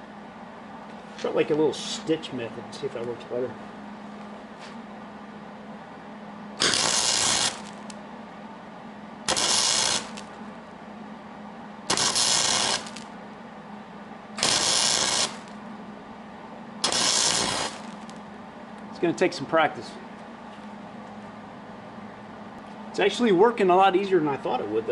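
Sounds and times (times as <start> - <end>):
welding arc crackling hiss: 6.6 - 8.0, 9.3 - 10.3, 11.9 - 13.1, 14.4 - 15.6, 16.8 - 18.2.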